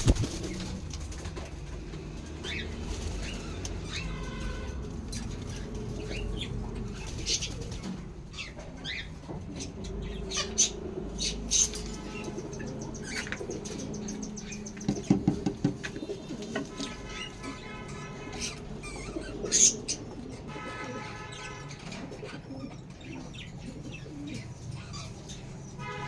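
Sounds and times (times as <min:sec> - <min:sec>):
bird wings flapping: 0:00.0 - 0:01.9
small birds chirping: 0:00.0 - 0:25.8.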